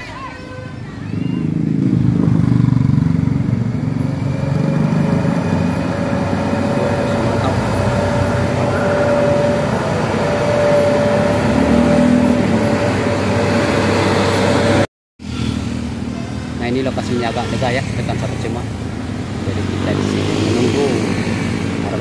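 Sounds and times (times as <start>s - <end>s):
road traffic engine and tyre noise: 0.0s - 22.0s
steady whine: 3.4s - 14.9s.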